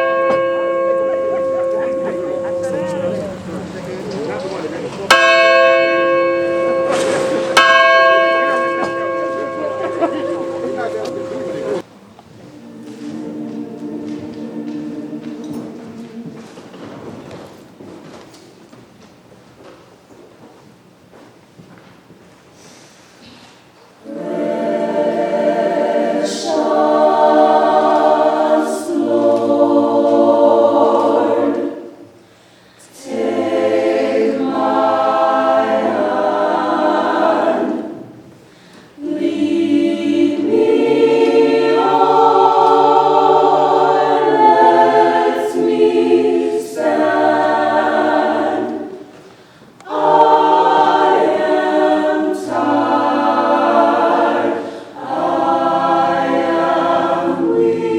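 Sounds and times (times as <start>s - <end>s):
choir singing a cappella: 0.0s - 0.6s, 5.9s - 16.6s, 24.0s - 57.9s.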